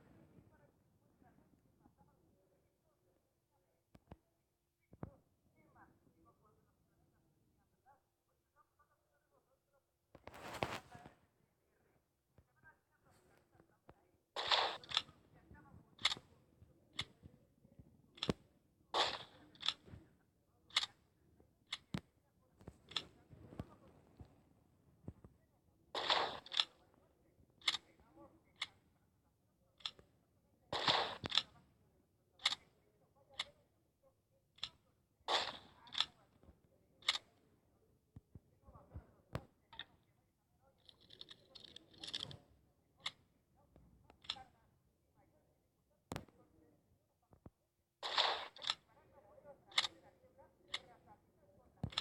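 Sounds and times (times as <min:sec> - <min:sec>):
sharp clicks: 0:14.4 - 0:15.1, 0:48.0 - 0:48.8.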